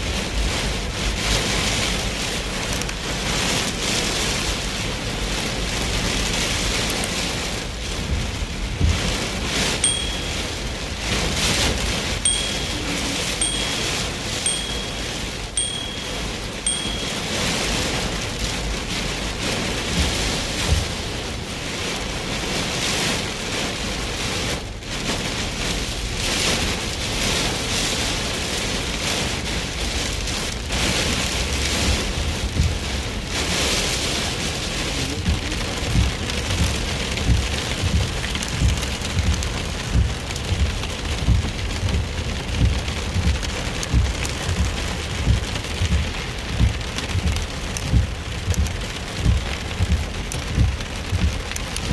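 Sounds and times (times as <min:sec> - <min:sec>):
heavy rain on a car: 0:00.0 - 0:51.9
low thumps: 0:31.8 - 0:33.4, 0:35.2 - 0:51.9.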